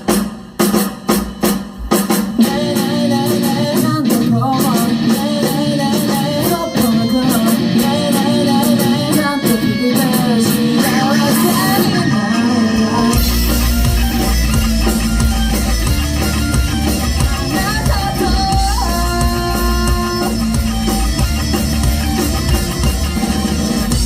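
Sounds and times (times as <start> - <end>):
rock band playing: 0.0 - 24.0
loud band hits: 13.2 - 24.0.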